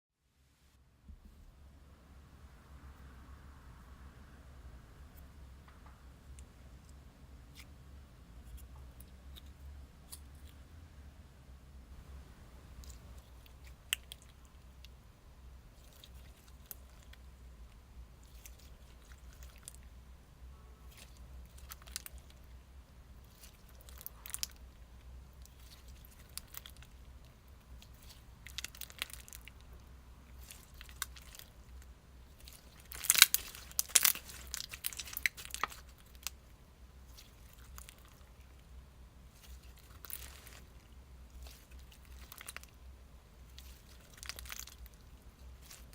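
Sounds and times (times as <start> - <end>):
slime squelching and crackling: 12.7 - 15.0, 15.6 - 20.0, 20.8 - 45.9.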